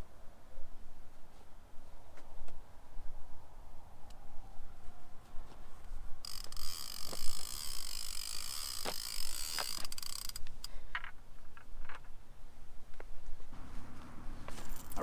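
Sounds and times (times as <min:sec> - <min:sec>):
fishing reel ratchet clicking: 0:06.2 - 0:10.8.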